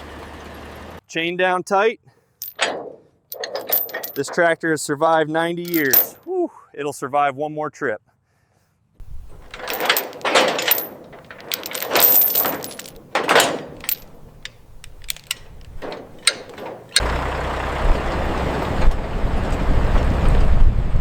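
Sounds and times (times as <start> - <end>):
vehicle rumbling on road: 0.0 - 1.0, 12.7 - 21.0
metal chain clinking and rattling: 2.4 - 4.4, 5.6 - 6.2, 9.0 - 17.2
scraping and rustling: 2.4 - 4.5, 5.7 - 6.2, 9.0 - 17.2
wind noise on microphone: 9.0 - 9.5, 17.8 - 21.0.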